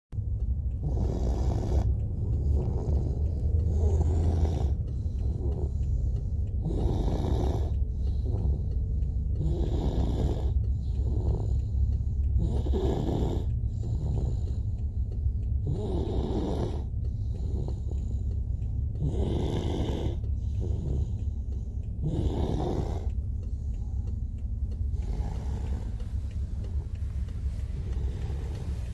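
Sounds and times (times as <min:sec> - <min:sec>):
steady low hum: 0:00.1 - 0:28.9
toddler snoring: 0:00.8 - 0:06.0, 0:06.6 - 0:08.7, 0:09.4 - 0:11.8, 0:12.4 - 0:14.7, 0:15.6 - 0:18.1, 0:19.0 - 0:21.2, 0:22.0 - 0:23.1, 0:24.9 - 0:26.0, 0:27.6 - 0:28.9.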